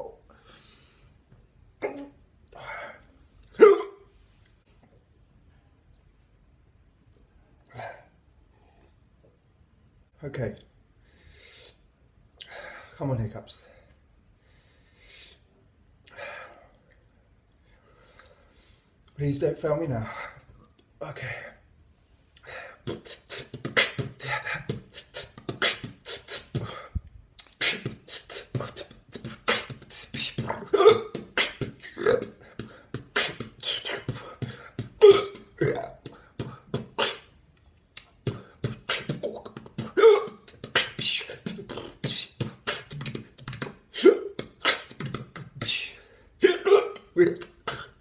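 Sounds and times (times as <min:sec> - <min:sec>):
person hiccuping: 0:01.8 - 0:02.2, 0:03.6 - 0:04.1, 0:28.6 - 0:32.4, 0:35.0 - 0:37.3, 0:38.8 - 0:43.0, 0:43.9 - 0:45.8, 0:46.4 - 0:48.0
beatboxing: 0:22.4 - 0:37.3, 0:38.0 - 0:48.0.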